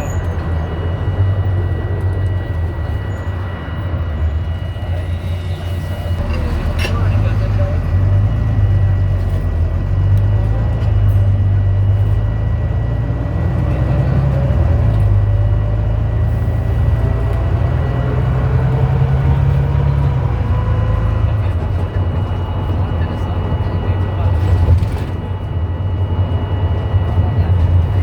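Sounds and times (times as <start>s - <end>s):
constant high beep: 0.0s - 17.1s
gearbox whine rising in pitch: 0.0s - 24.2s
bus diesel engine running: 0.0s - 28.0s.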